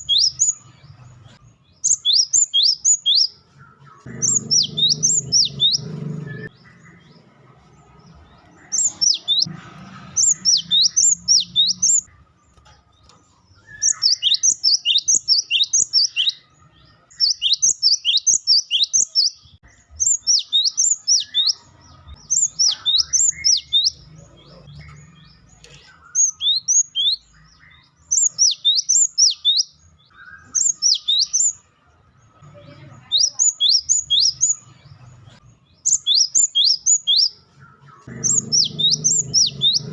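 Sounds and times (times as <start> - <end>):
bird giving sharp high calls: 38.1 - 39.9.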